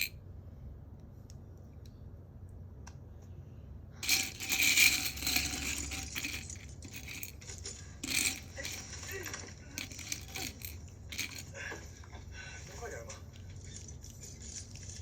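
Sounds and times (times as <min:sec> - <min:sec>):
plastic pieces clattering: 0:04.0 - 0:11.5.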